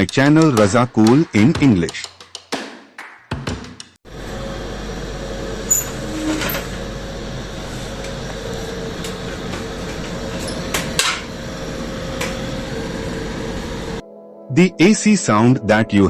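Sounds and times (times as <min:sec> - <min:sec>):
air conditioner fan hum and whirr: 0:04.1 - 0:14.0.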